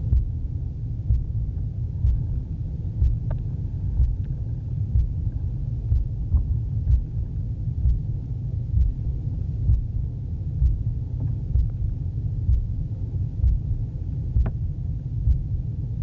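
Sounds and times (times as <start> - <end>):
heartbeat thumping: 0.0 - 15.7
muffled underwater rumble: 0.0 - 16.0.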